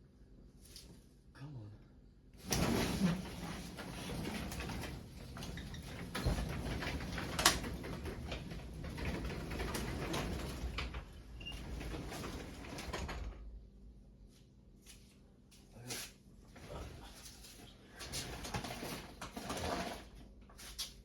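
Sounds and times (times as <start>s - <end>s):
garage door rollers rattling: 2.4s - 13.6s, 17.9s - 20.3s.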